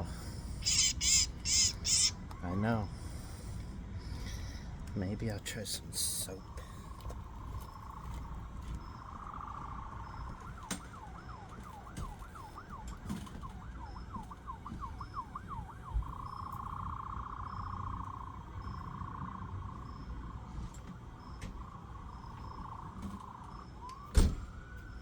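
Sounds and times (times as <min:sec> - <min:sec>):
emergency vehicle siren: 0:00.0 - 0:25.0.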